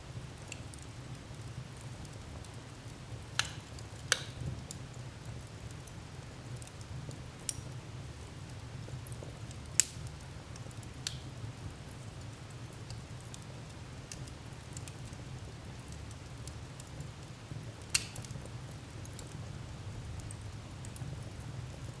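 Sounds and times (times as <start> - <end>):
fire crackling and popping: 0.1 - 22.0
wood fire rumbling: 0.1 - 22.0.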